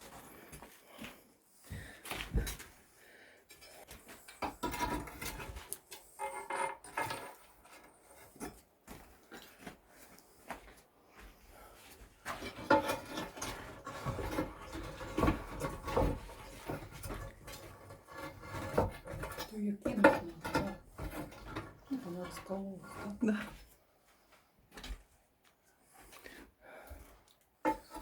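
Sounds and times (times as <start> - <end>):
bricks and rubble knocking: 12.3 - 23.4.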